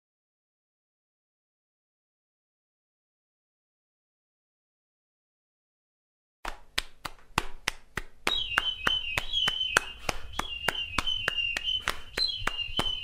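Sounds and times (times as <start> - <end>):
sharp rhythmic taps: 6.4 - 13.0.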